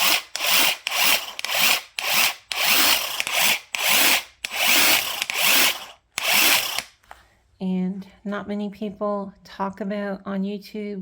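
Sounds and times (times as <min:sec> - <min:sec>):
cordless impact wrench bursts: 0:00.0 - 0:07.0.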